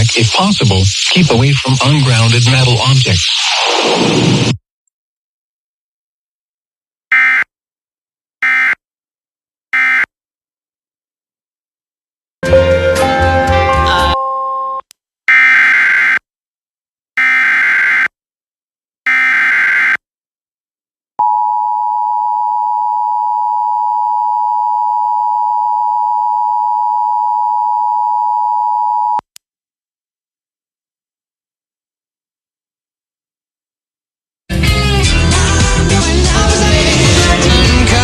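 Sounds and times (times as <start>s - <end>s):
rapid digital warbling: 0.0s - 4.6s.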